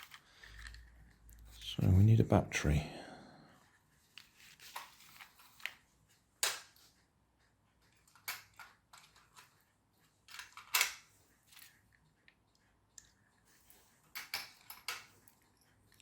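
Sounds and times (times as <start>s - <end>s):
plastic toy car clicks: 10.3s - 11.1s.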